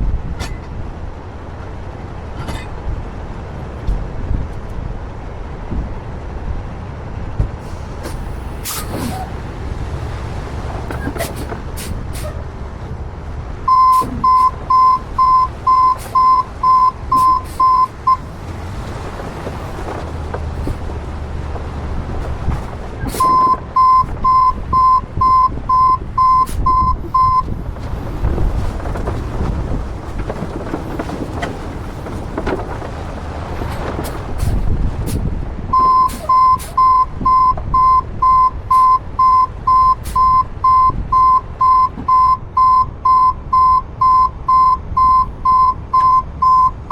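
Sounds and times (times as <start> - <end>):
low engine rumble: 0.0 - 46.9
truck reversing alarm beeping: 13.7 - 19.7, 23.1 - 27.6, 35.7 - 46.9.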